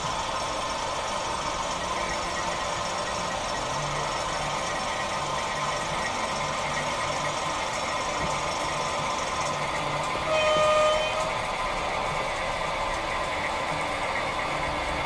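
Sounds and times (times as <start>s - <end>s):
diesel engine sound through small speaker: 0.0s - 15.0s
locomotive horn blast: 10.2s - 11.5s.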